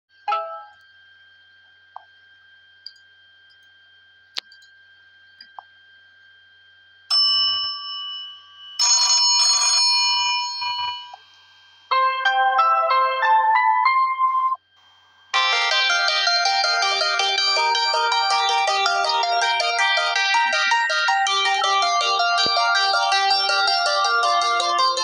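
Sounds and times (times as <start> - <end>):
faint steady whine: 0.2 - 12.0, 14.6 - 25.0
electronic keyboard-like notes: 0.3 - 0.8, 11.9 - 14.7, 15.4 - 25.0
bell-like ring: 7.1 - 11.9
bright chime: 15.4 - 25.0.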